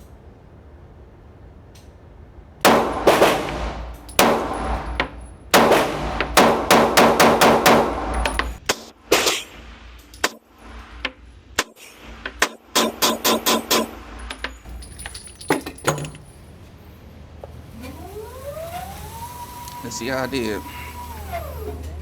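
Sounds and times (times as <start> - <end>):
pistol shots: 2.6 - 9.5
sharp gunshot cracks: 2.6 - 9.6.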